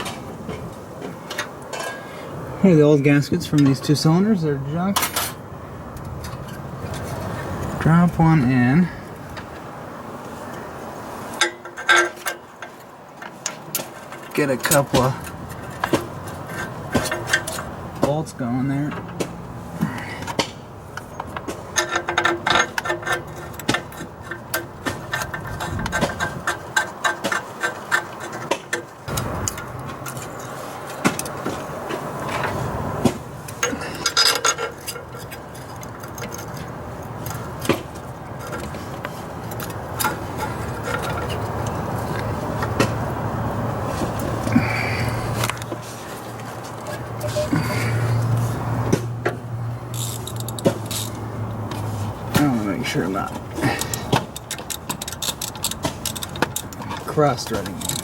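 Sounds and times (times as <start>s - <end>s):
metal tools and bolts clinking: 1.3s - 2.2s, 4.9s - 5.4s, 11.3s - 17.8s, 33.5s - 42.7s, 49.9s - 58.0s.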